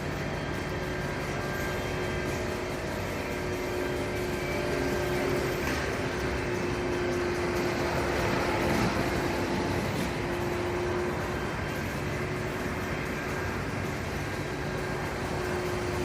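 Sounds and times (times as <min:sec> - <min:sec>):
vehicle engine running: 0:00.0 - 0:16.0.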